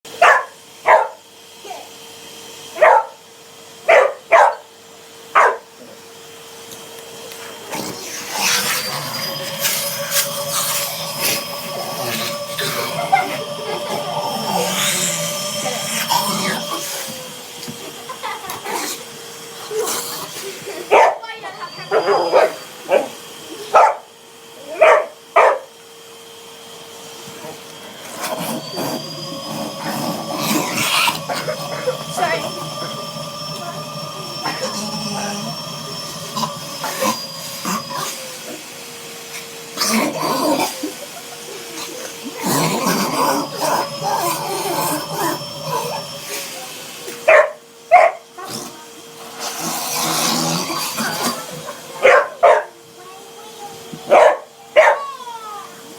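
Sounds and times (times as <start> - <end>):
vacuum cleaner motor whining: 0.1 - 55.9
dog barking: 0.2 - 1.2, 2.8 - 3.2, 3.9 - 4.7, 5.4 - 5.6, 23.8 - 24.0, 24.8 - 25.7, 47.3 - 48.2, 52.0 - 52.7, 54.1 - 55.1
dog barking sharply: 3.9 - 4.6.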